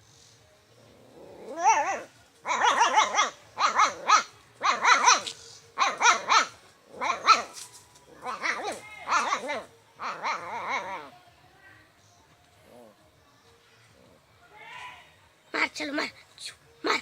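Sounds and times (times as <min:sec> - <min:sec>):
dog barking: 0:01.6 - 0:07.6, 0:08.2 - 0:10.5.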